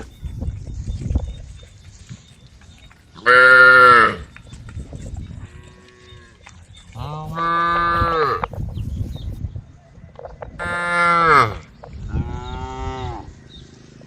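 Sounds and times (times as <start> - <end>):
cows mooing: 3.2 - 4.3, 5.4 - 8.6, 10.6 - 13.5.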